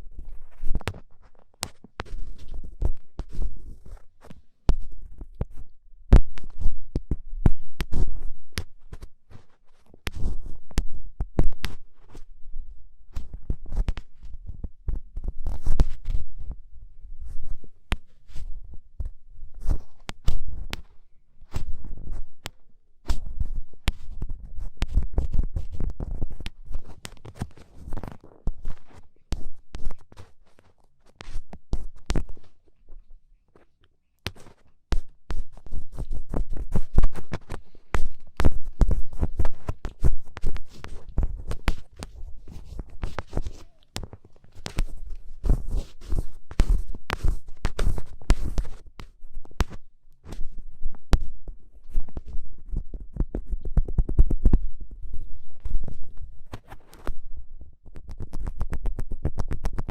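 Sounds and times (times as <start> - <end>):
ear pick scraping microphone: 34.4 - 50.4.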